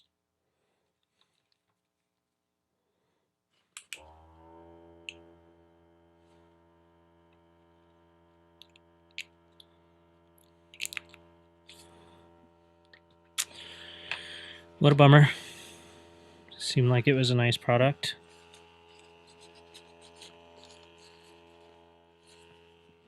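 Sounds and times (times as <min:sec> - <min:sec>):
electric pump humming: 0:03.8 - 0:23.0.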